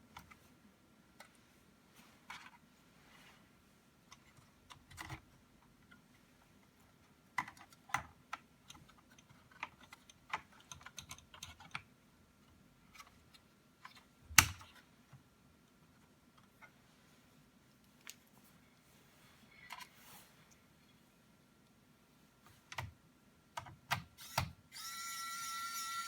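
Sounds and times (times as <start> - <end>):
plastic laptop parts clicking: 4.1 - 6.0, 7.3 - 11.9, 12.9 - 14.8.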